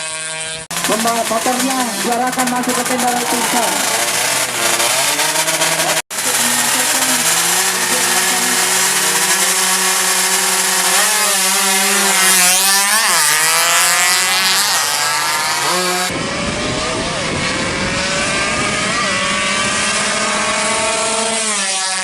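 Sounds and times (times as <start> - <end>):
two-stroke motorcycle engine revving: 0.0 - 22.0.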